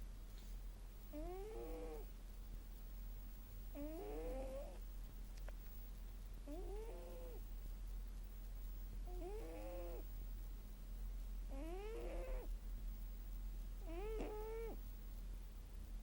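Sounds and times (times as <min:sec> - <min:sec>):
steady low hum: 0:00.0 - 0:16.0
cat snoring: 0:01.1 - 0:02.1, 0:03.7 - 0:04.8, 0:06.5 - 0:07.4, 0:09.1 - 0:10.0, 0:11.5 - 0:12.5, 0:13.8 - 0:14.8.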